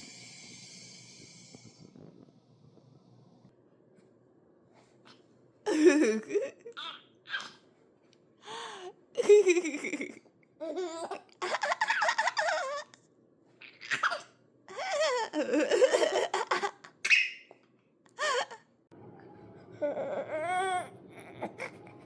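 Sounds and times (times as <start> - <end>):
baby laughing: 5.7 - 7.6, 9.2 - 13.0, 13.6 - 17.4.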